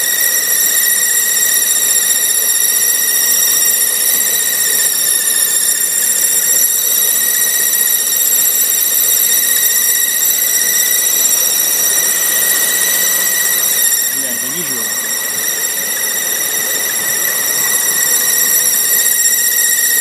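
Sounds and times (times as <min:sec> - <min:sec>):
power steering whistle: 0:14.9 - 0:20.0.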